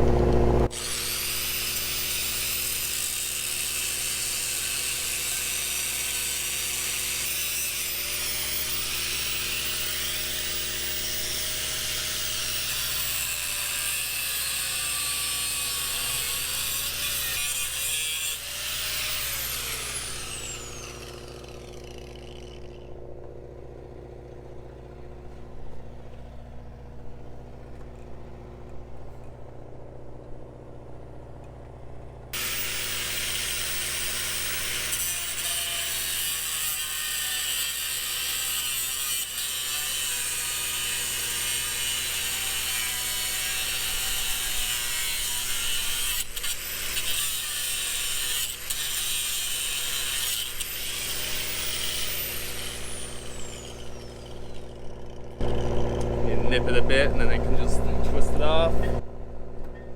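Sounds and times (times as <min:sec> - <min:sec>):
low hum: 0:00.0 - 0:00.7
grinder disc winding down: 0:00.0 - 0:02.9, 0:18.3 - 0:23.4, 0:50.5 - 0:59.0
angle grinder cutting bolts: 0:00.0 - 0:23.5, 0:32.4 - 0:59.0.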